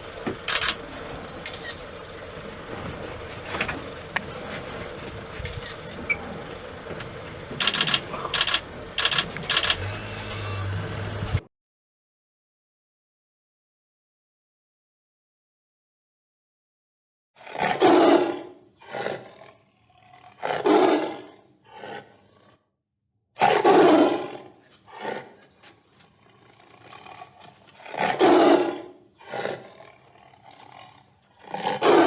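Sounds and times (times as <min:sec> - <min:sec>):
large animal deep calls: 0:00.0 - 0:11.4.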